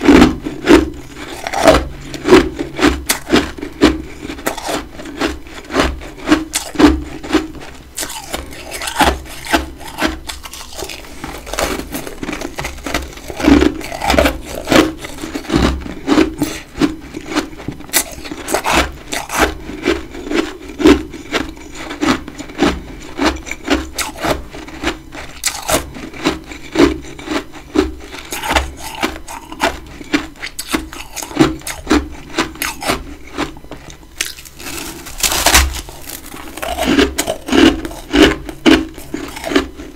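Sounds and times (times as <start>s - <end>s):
chewing frost crunches: 0.0s - 39.9s.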